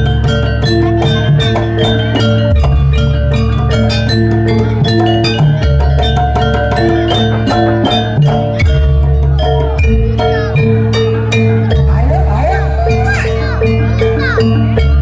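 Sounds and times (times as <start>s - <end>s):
metallophone notes: 0.0s - 15.0s.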